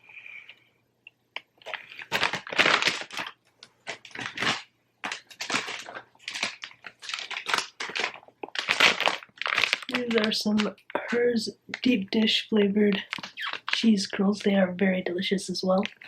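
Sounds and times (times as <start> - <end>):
chip bag crackling: 1.6 - 12.0, 12.9 - 14.6.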